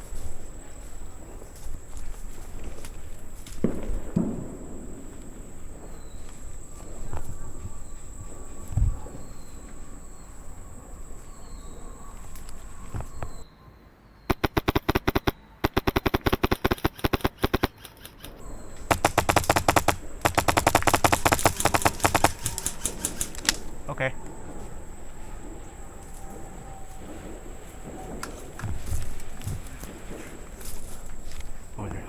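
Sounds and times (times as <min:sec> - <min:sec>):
airsoft rifle rapid firing: 0:14.3 - 0:23.7.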